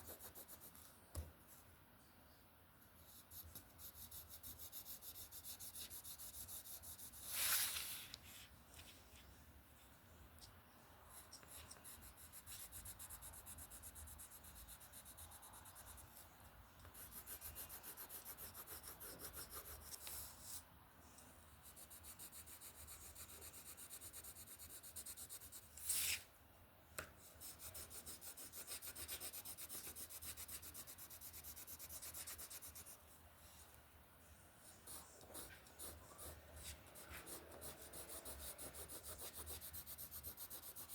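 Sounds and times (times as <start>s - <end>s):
drawing tool scratching: 16.9s - 20.1s, 34.8s - 40.9s.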